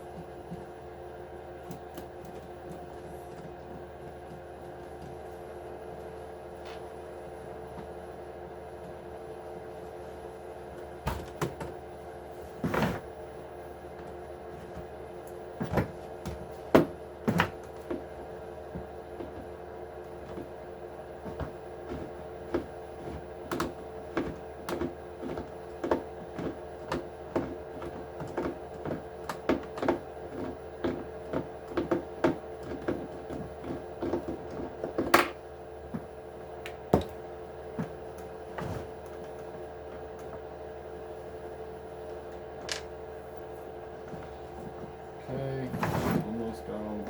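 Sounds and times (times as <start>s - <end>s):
steady hum: 0.0s - 47.0s.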